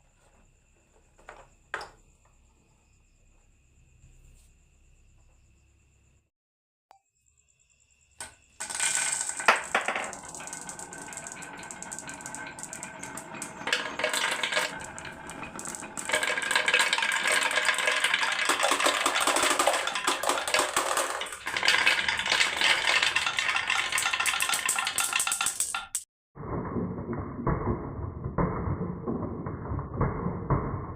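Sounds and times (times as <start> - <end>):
marbles rattling down wooden run: 8.6 - 26.1.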